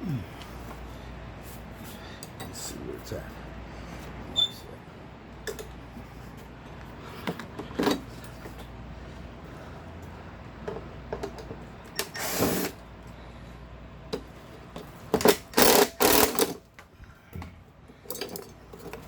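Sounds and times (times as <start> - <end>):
power drill bursts: 12.0 - 12.8, 15.3 - 16.6.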